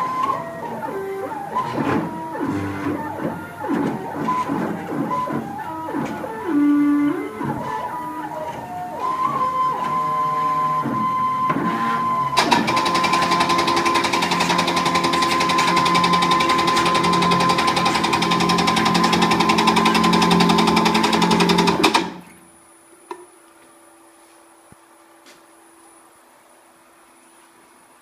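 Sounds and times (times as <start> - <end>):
stepper motors buzzing: 0.0 - 22.1.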